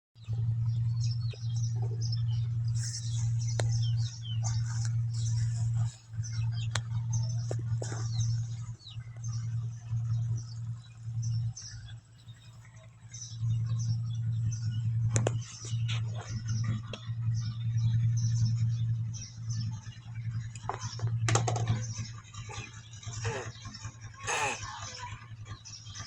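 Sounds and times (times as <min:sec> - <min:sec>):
loud steady low hum: 0:00.2 - 0:26.0
small animal squeaking: 0:22.4 - 0:23.6, 0:24.2 - 0:25.1.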